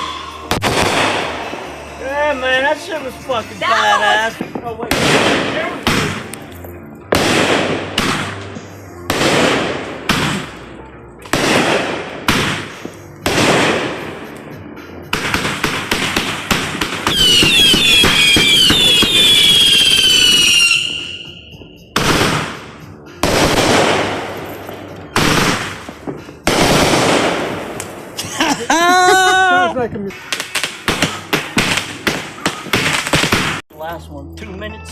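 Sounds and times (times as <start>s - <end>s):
firework bangs: 0.0s - 2.0s, 4.2s - 6.4s, 7.1s - 28.2s, 30.1s - 33.6s
firework crackling: 0.0s - 6.4s, 7.1s - 14.5s, 15.1s - 24.5s, 25.1s - 28.2s, 29.1s - 33.6s
falling firework whistles: 17.1s - 22.4s.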